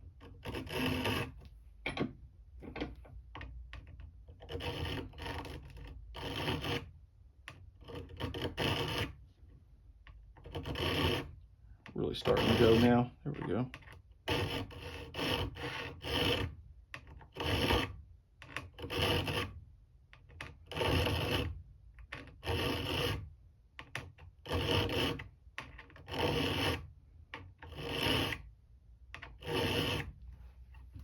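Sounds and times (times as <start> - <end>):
hand file rasping on steel: 0.1 - 1.4, 4.3 - 6.9, 7.5 - 9.2, 10.4 - 19.6, 20.4 - 23.3, 23.9 - 28.5, 29.2 - 30.2.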